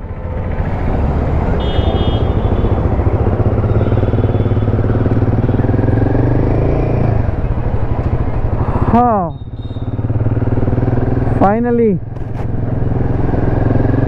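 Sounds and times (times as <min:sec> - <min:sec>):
motorcycle engine running steadily: 0:00.0 - 0:14.0.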